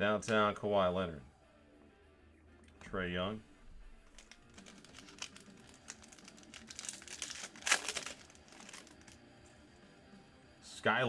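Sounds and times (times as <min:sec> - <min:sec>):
crinkling foil wrapper: 0:04.0 - 0:09.3.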